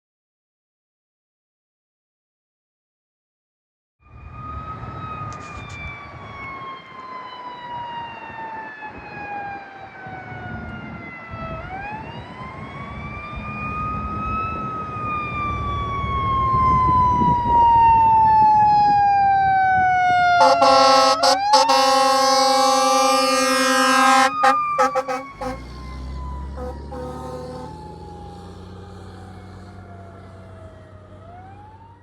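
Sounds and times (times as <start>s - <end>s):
fire truck siren wailing: 4.0s - 32.0s
truck engine rumble: 20.3s - 32.0s.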